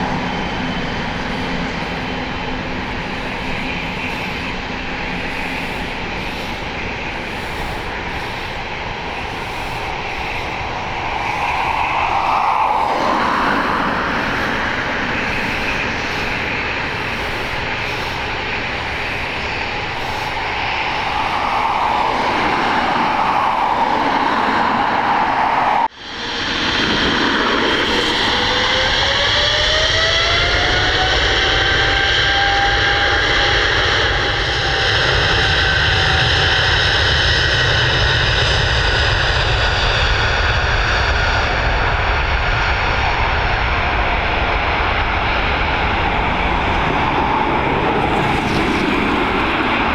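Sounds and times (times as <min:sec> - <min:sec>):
rising whining tones: 0:00.0 - 0:25.9
jet engines rushing: 0:00.0 - 0:49.9.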